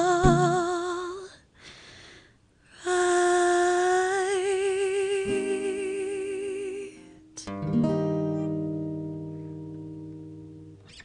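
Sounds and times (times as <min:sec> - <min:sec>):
woman singing long note: 0:00.0 - 0:01.3, 0:02.8 - 0:07.5
acoustic guitar note: 0:00.2 - 0:00.7, 0:05.2 - 0:11.0.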